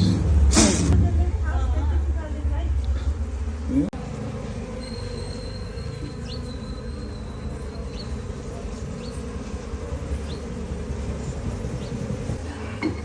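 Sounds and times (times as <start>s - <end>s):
bees buzzing in a swarm: 2.9s - 13.0s.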